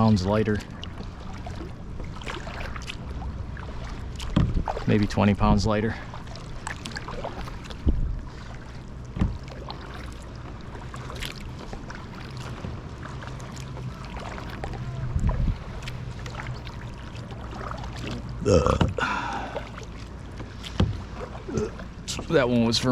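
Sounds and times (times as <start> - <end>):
paddle dipping into water: 0.0 - 22.8
low rumble: 0.0 - 22.9
dull knocks: 9.1 - 9.5, 20.8 - 21.7.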